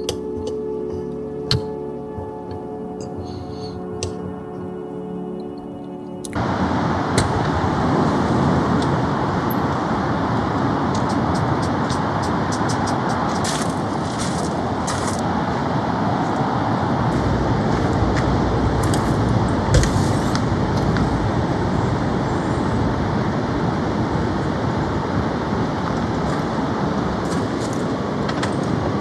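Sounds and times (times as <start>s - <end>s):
heavy rain falling: 6.4s - 29.0s.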